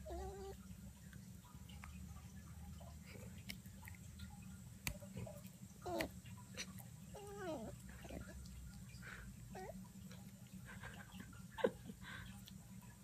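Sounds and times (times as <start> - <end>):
dog whining grumbles: 0.0 - 0.6, 7.1 - 8.4, 9.5 - 9.8.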